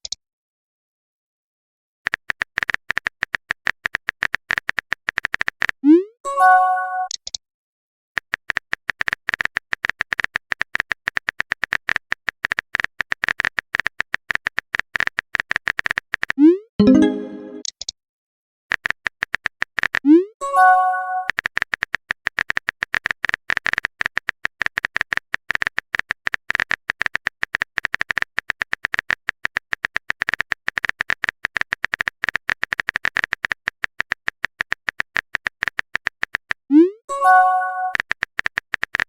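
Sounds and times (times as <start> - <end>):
phone keyboard typing clicks: 2.1 - 5.8, 21.2 - 36.6, 37.4 - 39.0
rising swoop and message chime: 16.8 - 17.6.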